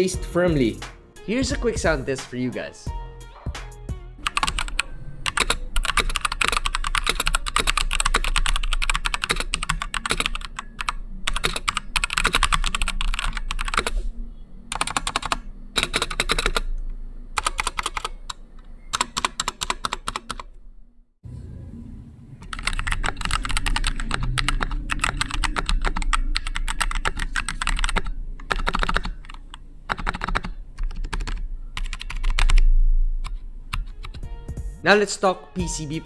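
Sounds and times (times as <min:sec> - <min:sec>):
typing on a mechanical keyboard: 0:04.2 - 0:14.0, 0:14.7 - 0:16.8, 0:17.4 - 0:20.5, 0:22.5 - 0:34.3.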